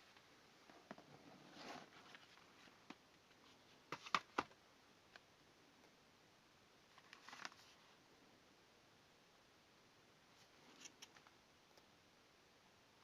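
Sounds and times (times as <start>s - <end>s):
packaging clicks and rustles: 7.0s - 7.8s.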